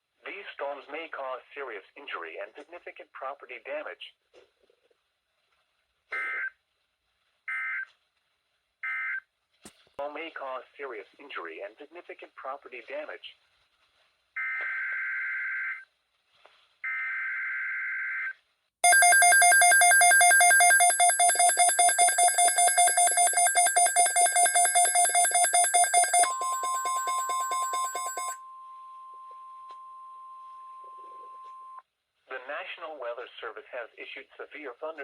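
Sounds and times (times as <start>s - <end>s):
steady high alarm tone: 18.8s - 31.8s.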